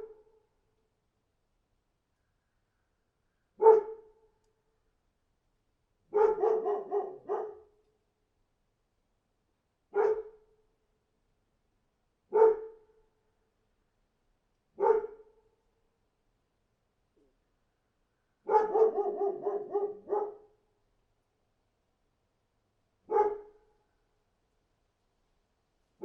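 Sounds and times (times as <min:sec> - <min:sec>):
dog barking: 0:03.6 - 0:04.1, 0:06.1 - 0:07.7, 0:09.9 - 0:10.4, 0:12.3 - 0:12.8, 0:14.8 - 0:15.3, 0:18.5 - 0:20.5, 0:23.1 - 0:23.6.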